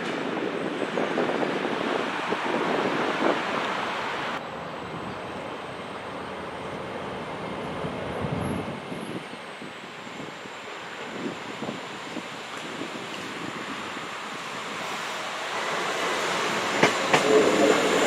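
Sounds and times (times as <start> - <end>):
wind buffeting microphone: 0.0 - 5.1, 7.6 - 18.0
train running past: 0.0 - 18.0.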